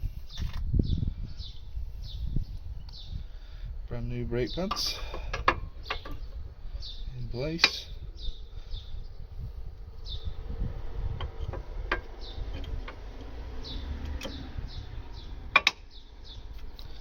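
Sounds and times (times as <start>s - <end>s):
metallic clicks of brake parts: 4.6s - 6.4s, 7.6s - 8.0s, 11.2s - 13.4s, 14.0s - 14.5s, 15.5s - 17.0s.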